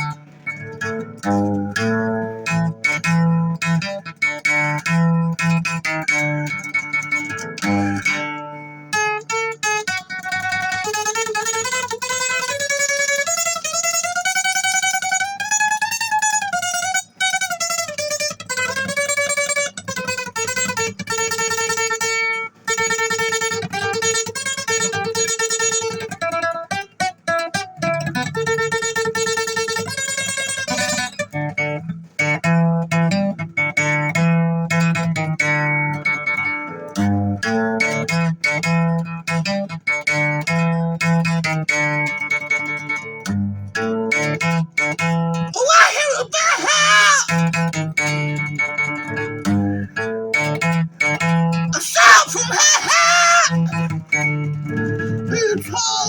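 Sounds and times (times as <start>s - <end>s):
guitar accompaniment: 0.0s - 56.0s
lead guitar with bent notes: 42.7s - 56.0s.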